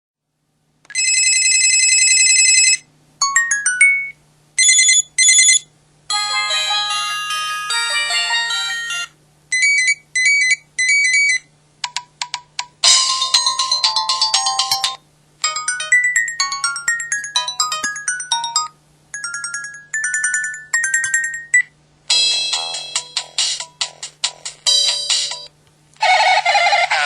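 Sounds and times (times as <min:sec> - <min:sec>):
faint steady hum: 0:00.2 - 0:27.0
trilling electronic phone ring: 0:00.9 - 0:11.4
polyphonic ringtone melody: 0:02.1 - 0:09.1, 0:12.8 - 0:24.0
phone beeps and blips: 0:03.2 - 0:05.6.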